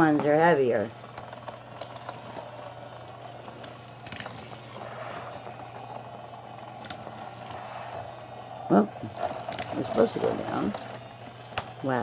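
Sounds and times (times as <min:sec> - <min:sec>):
plastic toy trains rattling: 0:00.0 - 0:12.0
toy train motor humming: 0:00.0 - 0:12.0.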